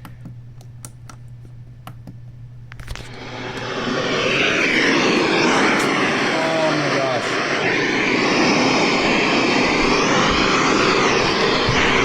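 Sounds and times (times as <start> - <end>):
radio static hiss: 2.8 - 12.0.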